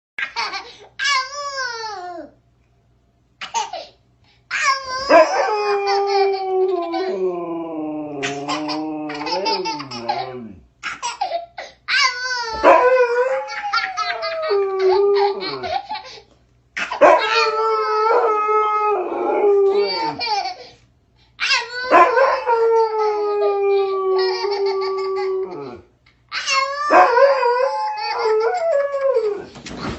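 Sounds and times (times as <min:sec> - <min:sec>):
baby laughing: 0:00.2 - 0:02.2, 0:08.2 - 0:12.8, 0:13.4 - 0:17.6, 0:19.7 - 0:20.7, 0:24.2 - 0:26.9
dog howling: 0:05.1 - 0:10.6, 0:12.5 - 0:15.8, 0:17.0 - 0:20.3, 0:21.8 - 0:25.9, 0:26.8 - 0:29.5.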